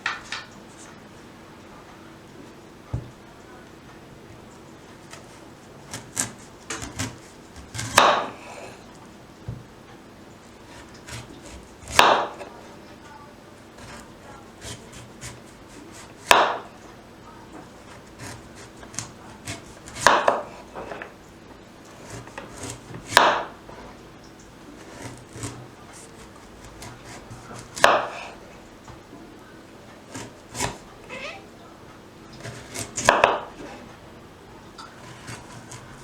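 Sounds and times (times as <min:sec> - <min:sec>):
knife chopping on wooden board: 0:05.1 - 0:08.7, 0:09.5 - 0:09.7, 0:10.7 - 0:12.5, 0:13.8 - 0:16.7, 0:17.8 - 0:21.1, 0:22.0 - 0:23.6, 0:24.8 - 0:28.4, 0:30.1 - 0:30.9, 0:32.4 - 0:33.7, 0:35.0 - 0:36.0.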